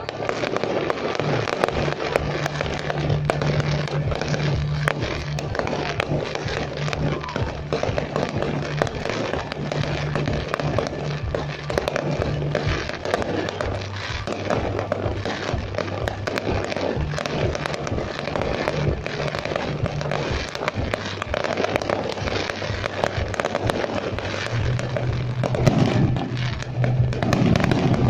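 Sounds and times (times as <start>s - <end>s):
fireworks crackling and popping: 0.0s - 28.0s
music playing: 0.0s - 28.0s.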